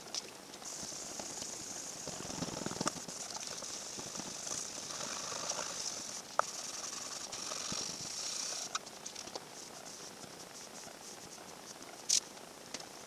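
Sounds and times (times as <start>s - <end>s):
sandpaper scrubbing hiss: 0.6s - 8.8s.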